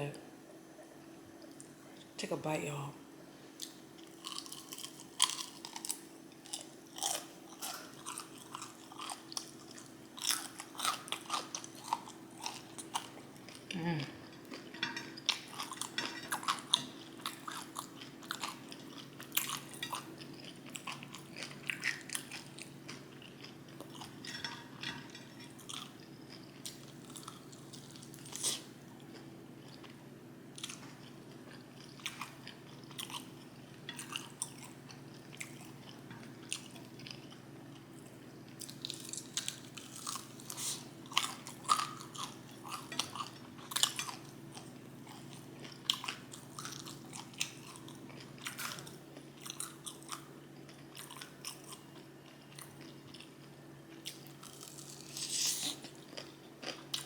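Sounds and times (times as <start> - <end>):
faint steady hum: 0.0 - 57.0
chewing and biting food: 3.6 - 13.7, 14.5 - 29.9, 38.0 - 53.4, 54.0 - 57.0.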